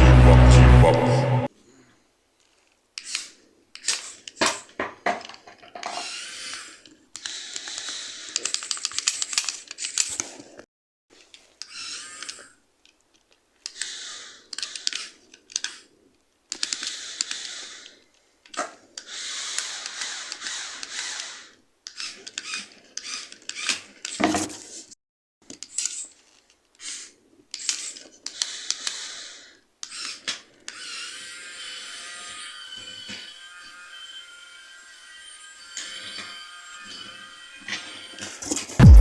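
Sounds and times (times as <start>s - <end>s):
small motor and gears whirring: 5.9s - 10.2s, 11.6s - 12.6s, 19.0s - 24.5s, 26.8s - 38.7s
sharp knock: 38.8s - 39.0s.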